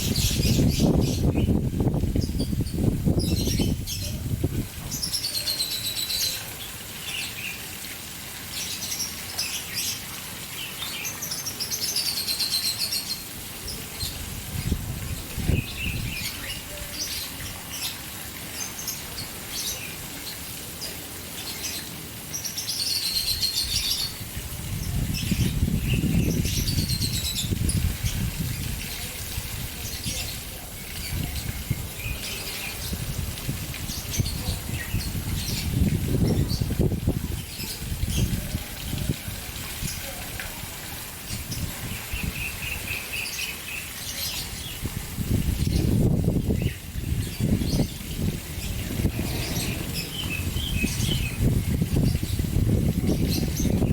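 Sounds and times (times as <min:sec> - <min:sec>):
caged birds chirping: 0:00.0 - 0:40.4, 0:41.2 - 0:53.9
fountain splashing: 0:00.0 - 0:53.9
low rumble: 0:48.0 - 0:52.3.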